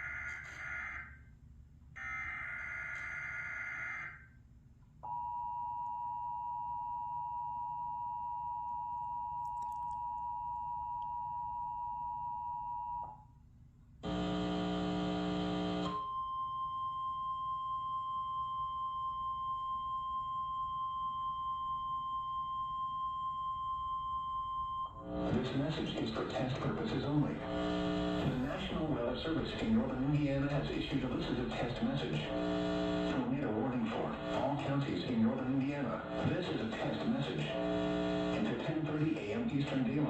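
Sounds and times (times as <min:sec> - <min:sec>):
loud buzzing tone: 0:14.0 - 0:16.0, 0:25.0 - 0:25.9, 0:26.6 - 0:34.9, 0:35.8 - 0:38.5
single-pitch warning alarm tone: 0:14.0 - 0:25.3.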